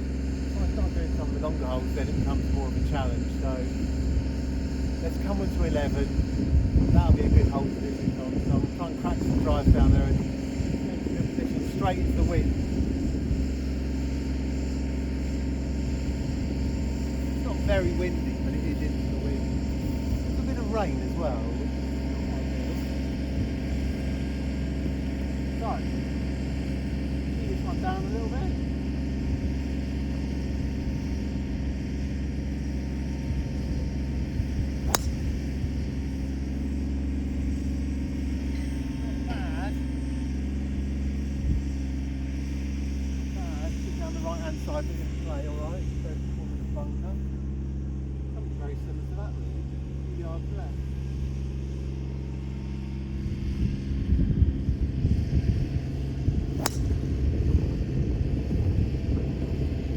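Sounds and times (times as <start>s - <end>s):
steady low rumble: 0.0s - 13.8s, 21.6s - 42.2s, 52.2s - 59.9s
low hum: 0.0s - 43.1s, 50.7s - 59.9s
golf club striking ball: 34.8s - 36.1s, 56.4s - 57.5s.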